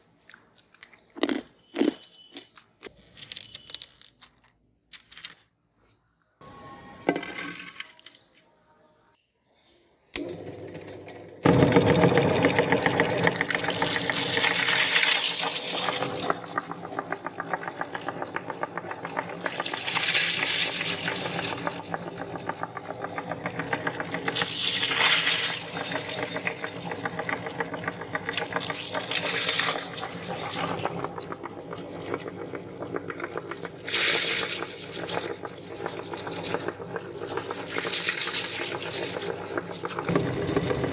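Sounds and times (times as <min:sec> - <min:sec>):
cereal crackling as crushed: 0:01.2 - 0:04.6, 0:13.4 - 0:17.6
electric meat grinder motor humming: 0:10.2 - 0:40.9.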